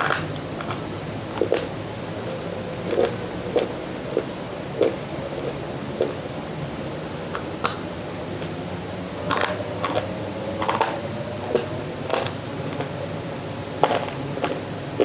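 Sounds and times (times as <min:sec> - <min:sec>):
steady background hiss: 0:00.0 - 0:15.0.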